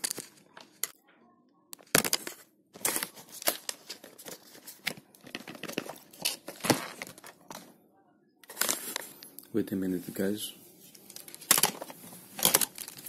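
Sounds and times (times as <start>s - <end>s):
packaging crinkling and rustling: 0.0s - 1.0s, 1.8s - 7.7s, 8.4s - 9.3s, 10.1s - 13.0s.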